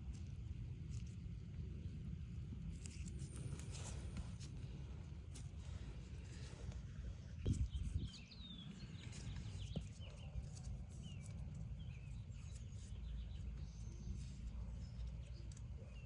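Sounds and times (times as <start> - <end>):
small birds chirping: 5.6 - 16.0.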